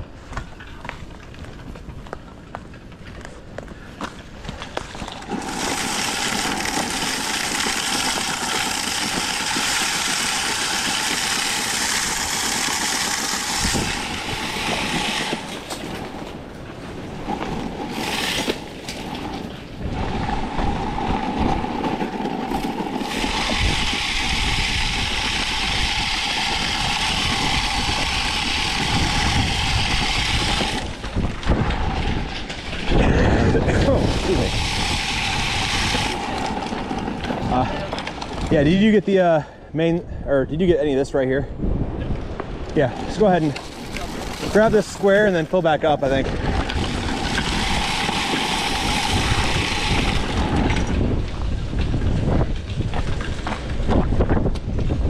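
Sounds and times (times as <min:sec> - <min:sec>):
wind rumbling on microphone: 0:00.0 - 0:55.0
salt spreader whirring: 0:04.7 - 0:39.4, 0:42.7 - 0:52.6.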